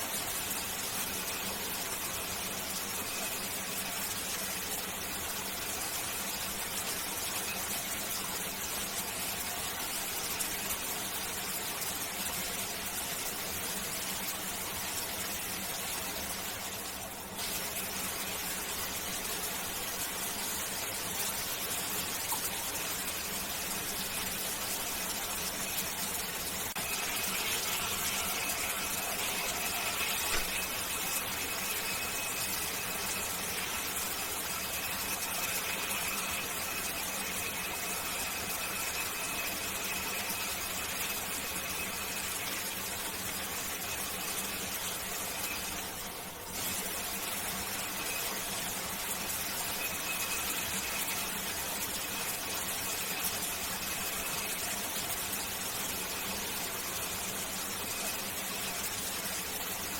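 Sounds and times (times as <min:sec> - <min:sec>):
shower water spraying: 0:00.0 - 0:59.9.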